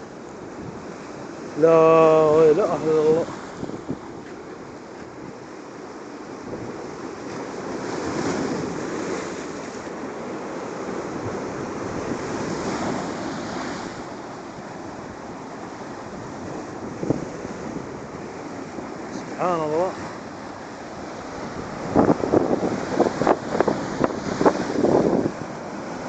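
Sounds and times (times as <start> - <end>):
sea waves breaking: 0.0 - 26.0
wind buffeting microphone: 2.2 - 5.6, 15.9 - 19.2, 19.9 - 25.9.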